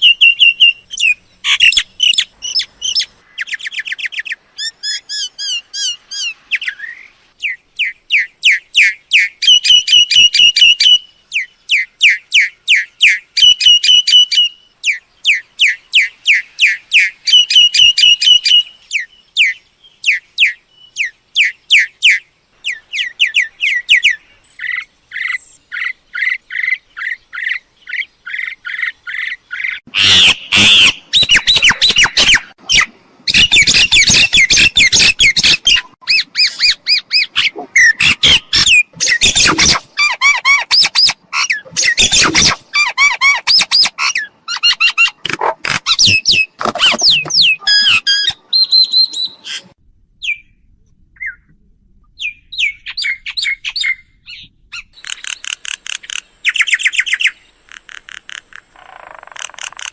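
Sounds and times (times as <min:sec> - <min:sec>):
myna calling: 0:20.1 - 0:48.8.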